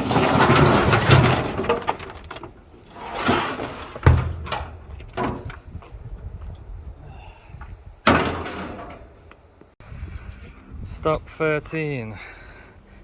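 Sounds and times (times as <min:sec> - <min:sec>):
metal scraping and clattering: 0:00.0 - 0:05.7, 0:08.1 - 0:09.2
heavy thump: 0:04.0 - 0:05.6, 0:08.1 - 0:09.1.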